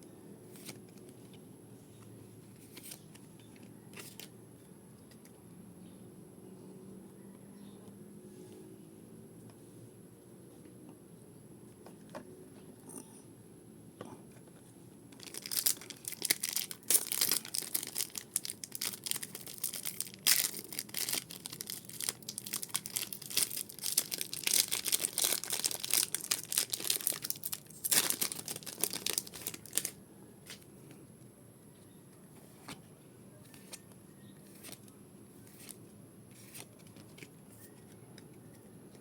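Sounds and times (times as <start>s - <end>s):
foil wrappers tearing and crinkling: 15.2s - 30.0s.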